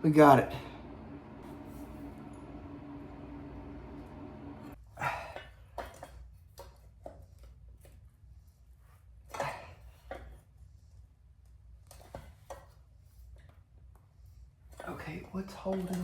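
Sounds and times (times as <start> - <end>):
steady hum: 0.0 - 4.8.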